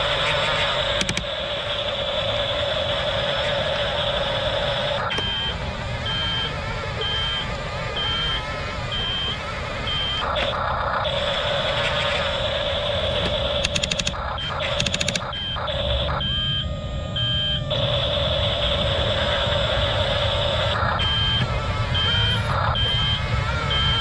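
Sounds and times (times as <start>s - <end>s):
toy bulldozer motor whine: 0.0s - 24.0s
rapid clicks: 0.4s - 1.3s, 13.2s - 15.4s
reversing alarm beeps: 3.5s - 24.0s.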